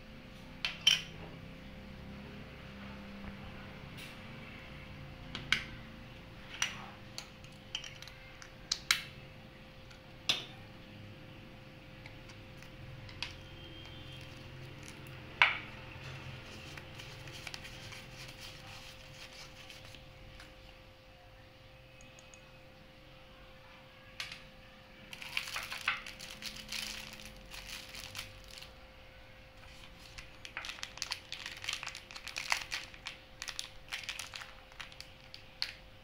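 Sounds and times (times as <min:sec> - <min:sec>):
faint steady hum: 0:00.0 - 0:36.0
hard objects clicking and clinking: 0:06.6 - 0:09.0, 0:25.1 - 0:28.6.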